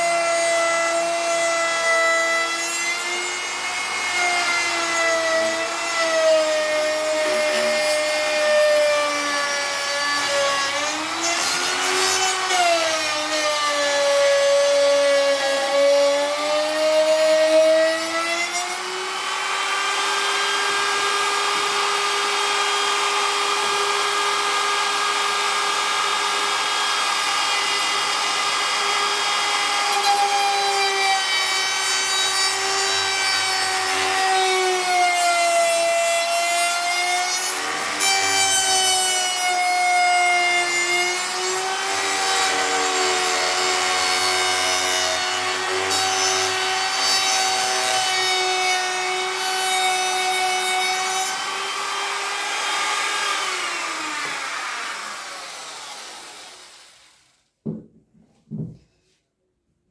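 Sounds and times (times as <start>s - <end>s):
power tool motor whining: 3.3s - 12.5s.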